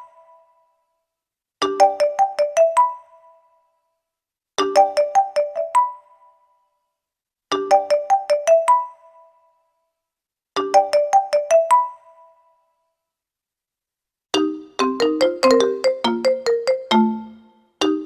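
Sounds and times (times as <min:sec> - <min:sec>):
ringtone melody on keyboard: 0:01.6 - 0:03.5, 0:04.6 - 0:06.5, 0:07.5 - 0:09.5, 0:10.6 - 0:12.6, 0:14.4 - 0:18.0.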